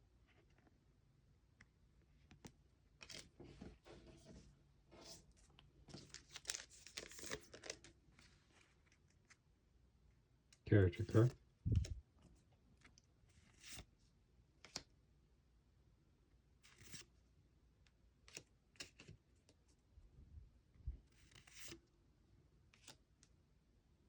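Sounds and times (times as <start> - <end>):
cards sliding swishes: 21.2 - 21.8.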